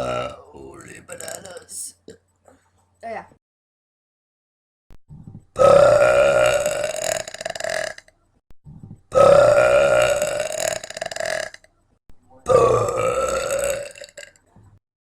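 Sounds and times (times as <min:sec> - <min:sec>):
woman burping: 0:01.2 - 0:02.2, 0:12.5 - 0:14.4.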